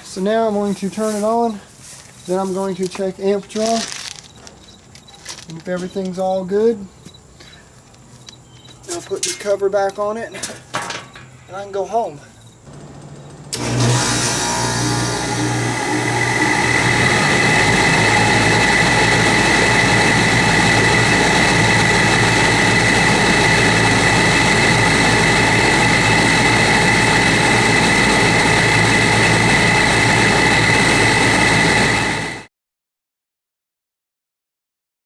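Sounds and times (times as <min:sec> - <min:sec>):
heat pump running: 0:12.7 - 0:32.4.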